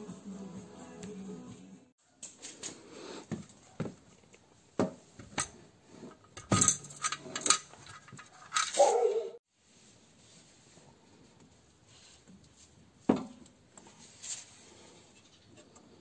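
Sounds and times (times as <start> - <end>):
metal tools clinking: 5.3 - 9.1.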